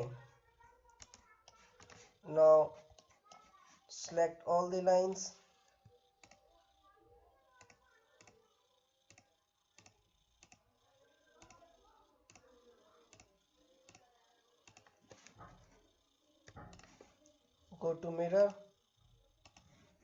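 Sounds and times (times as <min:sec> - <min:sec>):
faint computer mouse clicks: 0:01.0 - 0:02.1, 0:07.6 - 0:08.5, 0:12.3 - 0:15.4, 0:19.4 - 0:19.8.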